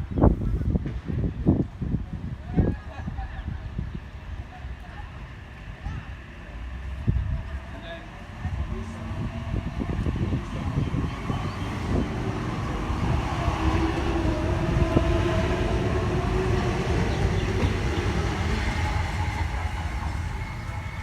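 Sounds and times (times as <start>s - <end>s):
wheels rumbling on rail: 0.0s - 21.0s
wind buffeting microphone: 0.0s - 21.0s
train traction motor whine: 8.5s - 21.0s.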